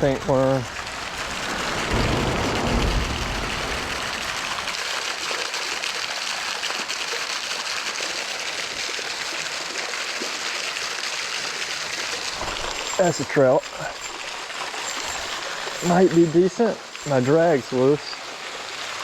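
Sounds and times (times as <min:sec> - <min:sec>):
rain hissing: 0:00.0 - 0:05.5, 0:11.4 - 0:19.0
flowing river water: 0:00.0 - 0:19.0
low rumble: 0:00.7 - 0:04.8.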